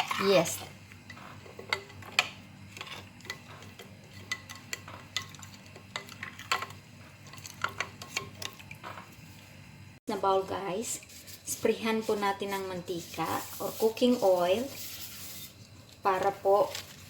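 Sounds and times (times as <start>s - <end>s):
spoon stirring liquid in bowl: 0.0s - 9.2s.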